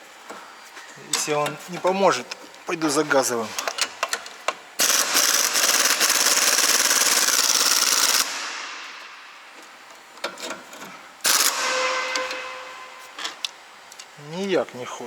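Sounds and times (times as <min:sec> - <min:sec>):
pneumatic impact wrench rattling: 0:03.6 - 0:09.3, 0:10.2 - 0:13.5.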